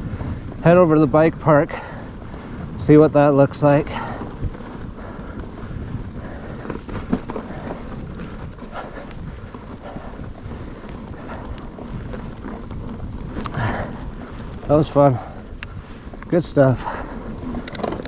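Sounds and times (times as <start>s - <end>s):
bike tyres on dirt trail: 0.0s - 18.0s
wind noise on microphone: 0.0s - 18.0s
bike knocks and rattles: 6.2s - 9.4s, 17.4s - 18.0s.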